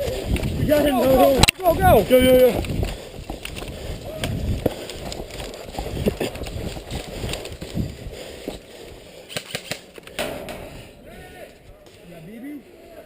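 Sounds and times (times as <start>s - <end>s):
gear jostling against camera: 0.0s - 10.2s
running footsteps: 0.0s - 12.1s
sharp clicks: 9.3s - 10.2s.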